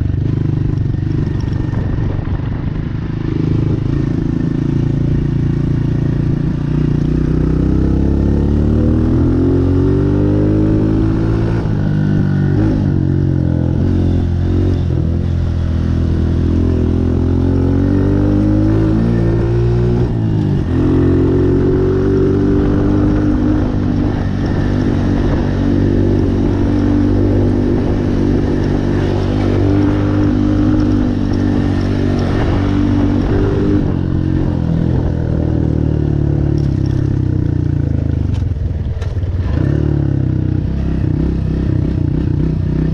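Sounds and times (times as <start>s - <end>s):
dirt bike engine revving: 6.6s - 35.1s.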